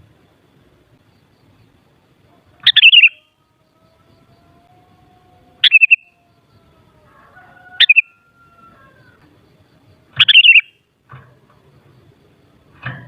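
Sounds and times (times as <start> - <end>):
bulbul calling: 1.2 - 3.4, 5.6 - 6.8, 7.7 - 12.0.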